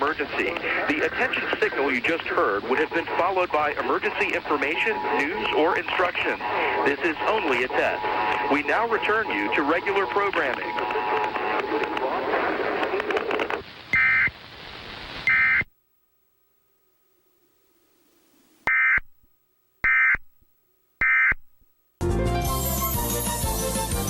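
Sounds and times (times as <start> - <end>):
static hiss: 0.0 - 20.4
music: 22.0 - 24.0.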